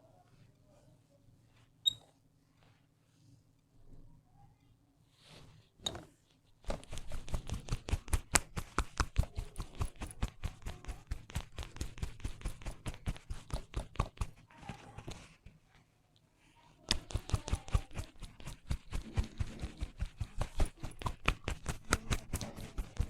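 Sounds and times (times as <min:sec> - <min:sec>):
hands slapping a head: 0:06.6 - 0:14.4, 0:16.9 - 0:23.0.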